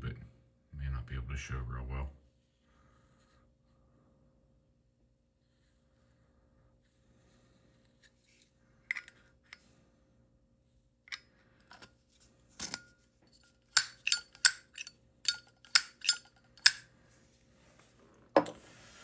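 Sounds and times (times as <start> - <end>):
metal lighter clinking and clicking: 13.8 - 16.8.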